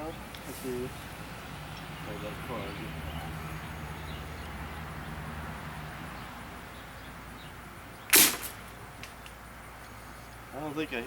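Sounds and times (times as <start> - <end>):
slingshot rubber bands snapping: 8.1 - 9.4.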